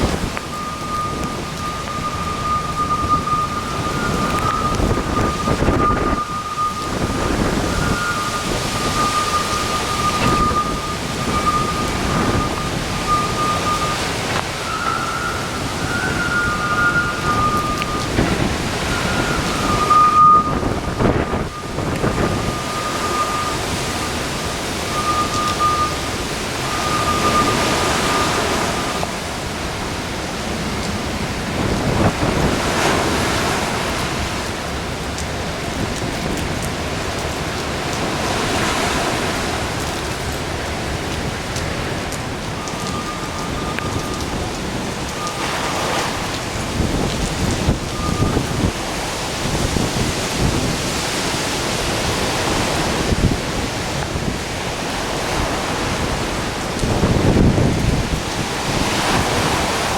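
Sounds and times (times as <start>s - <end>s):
strong wind blasting microphone: 0.0s - 59.9s
waves breaking on shore: 0.0s - 59.9s
thin high whistle: 0.4s - 29.1s, 42.5s - 44.4s, 47.7s - 48.7s.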